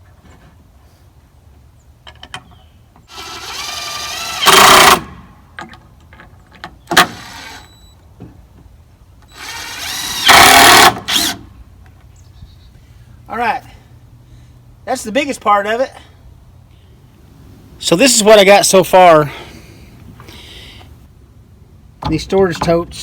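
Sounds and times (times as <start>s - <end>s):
power drill driving screws into wood: 3.1s - 5.2s, 6.9s - 7.8s, 9.3s - 11.4s.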